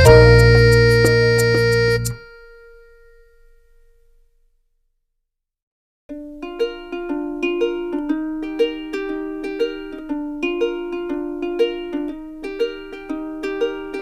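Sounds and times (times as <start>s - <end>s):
light melody of pitched notes: 0.0s - 3.0s.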